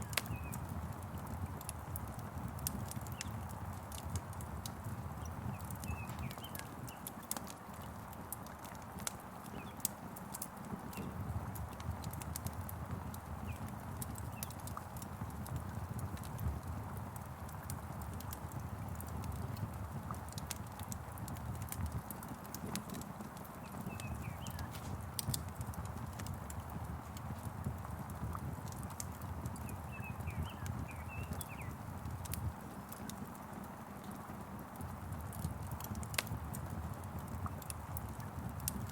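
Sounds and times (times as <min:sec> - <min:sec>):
small birds chirping: 0:00.0 - 0:01.3, 0:02.6 - 0:07.9, 0:09.0 - 0:16.4, 0:20.6 - 0:27.6, 0:28.6 - 0:33.2
wood fire crackling and popping: 0:00.0 - 0:38.9
rain hissing: 0:23.0 - 0:25.2.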